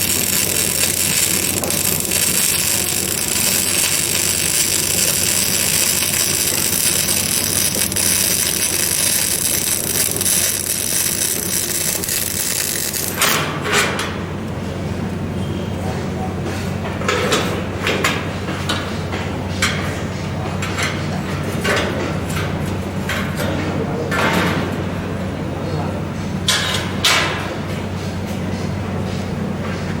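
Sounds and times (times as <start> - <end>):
arc welding crackling hiss: 0.0 - 13.3.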